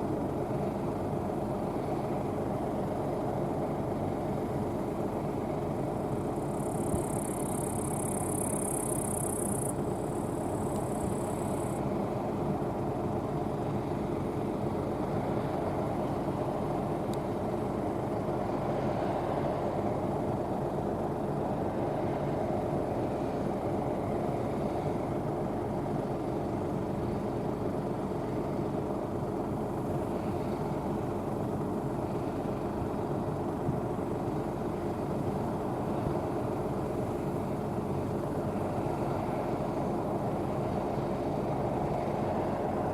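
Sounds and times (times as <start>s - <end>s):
combine harvester droning: 0.0s - 42.9s.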